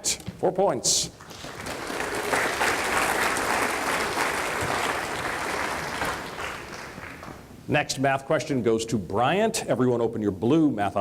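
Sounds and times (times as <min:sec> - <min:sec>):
audience applauding: 0:01.2 - 0:07.5.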